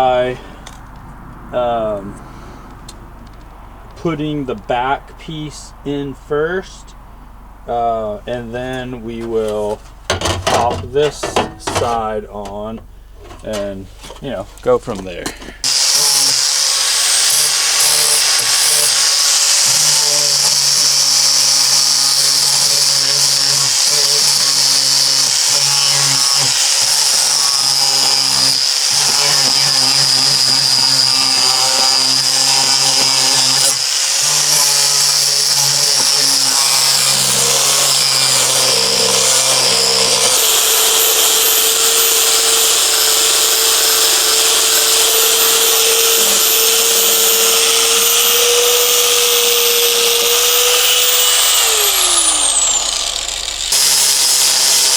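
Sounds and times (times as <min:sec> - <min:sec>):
electric grinder on sheet steel: 0:15.6 - 0:54.9.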